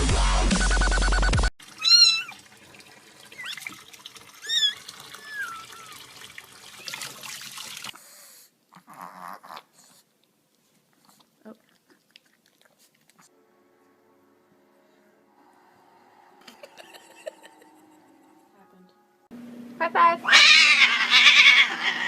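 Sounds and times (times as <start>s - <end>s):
dubstep music: 0.0s - 1.5s
cat meowing: 1.8s - 2.4s, 4.5s - 6.0s, 20.2s - 22.0s.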